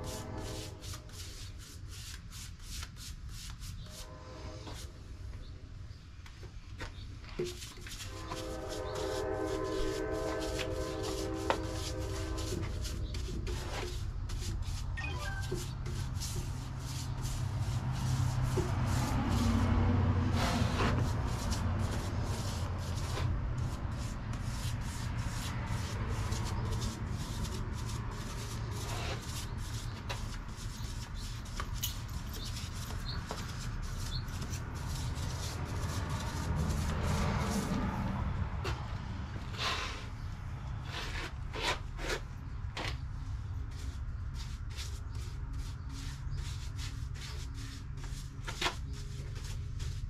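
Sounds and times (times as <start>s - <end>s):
paintbrush rubbing on wood: 0.0s - 5.1s, 7.4s - 38.9s, 43.6s - 50.0s.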